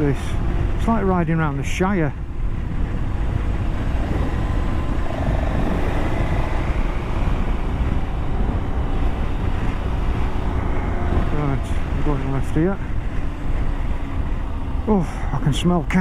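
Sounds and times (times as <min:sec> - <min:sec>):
wind rumble on microphone: 0:00.0 - 0:16.0
motorcycle engine running: 0:02.2 - 0:14.8.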